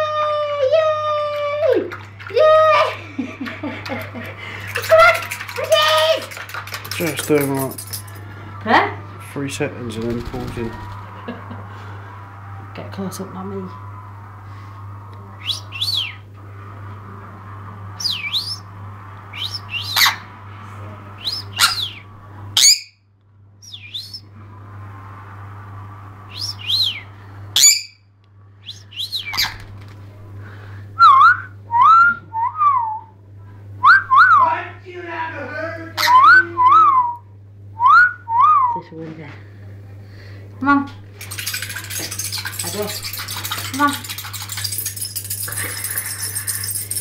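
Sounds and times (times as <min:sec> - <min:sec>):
low hum: 0:00.0 - 0:34.4
parrot chirps and squawks: 0:19.4 - 0:20.3, 0:21.3 - 0:22.0, 0:22.6 - 0:23.0, 0:27.6 - 0:28.0, 0:29.1 - 0:29.7
whistled notes rising and falling: 0:26.3 - 0:28.0.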